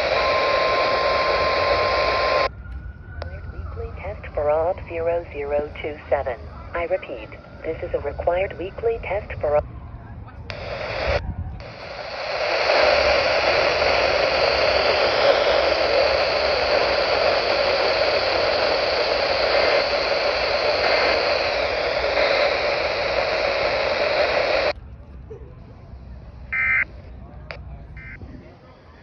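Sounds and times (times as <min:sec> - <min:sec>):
radio static hiss: 0:00.0 - 0:02.5, 0:03.3 - 0:09.6, 0:10.5 - 0:24.8, 0:25.9 - 0:28.5.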